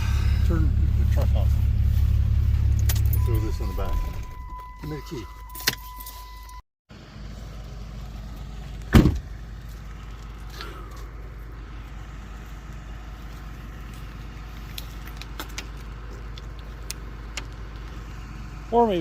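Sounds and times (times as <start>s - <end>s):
steady low rumble: 0.0s - 4.8s
loud thump on truck: 8.9s - 9.3s.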